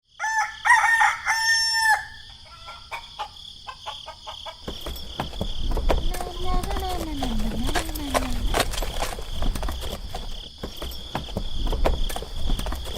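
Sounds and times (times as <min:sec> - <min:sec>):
rooster crowing: 0:00.1 - 0:04.6.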